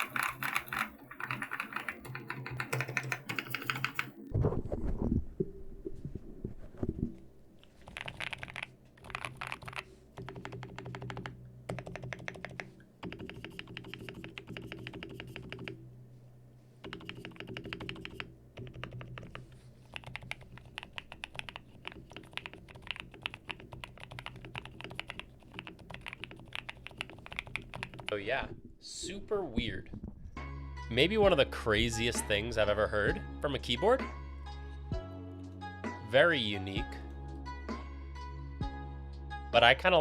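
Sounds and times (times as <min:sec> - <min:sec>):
mechanical keyboard typing: 0:00.0 - 0:04.2, 0:07.8 - 0:15.8, 0:16.8 - 0:28.2.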